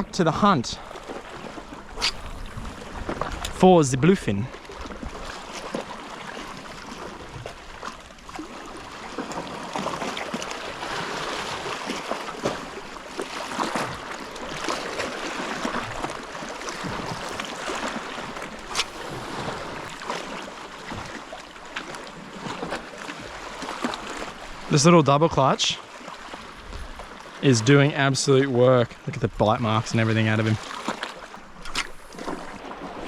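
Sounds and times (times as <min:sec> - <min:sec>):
sea water sloshing against rocks: 0:00.6 - 0:24.9, 0:30.4 - 0:33.0.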